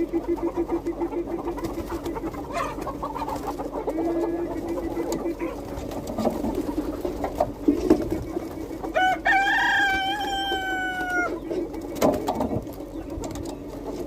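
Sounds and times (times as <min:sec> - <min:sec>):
chickens murmuring: 0:00.0 - 0:14.0
rooster crowing: 0:08.9 - 0:11.4.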